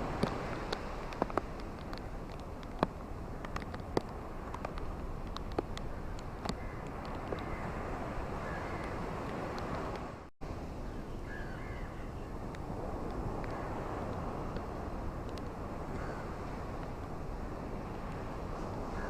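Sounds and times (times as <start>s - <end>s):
ocean waves breaking: 0.0s - 19.0s
faint bird calls: 10.8s - 12.3s.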